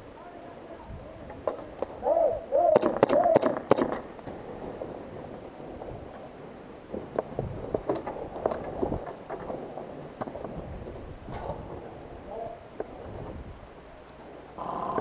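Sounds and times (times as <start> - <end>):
wind rumble on microphone: 0.0 - 3.4, 4.0 - 15.0
airsoft gunfire pops: 2.8 - 4.0.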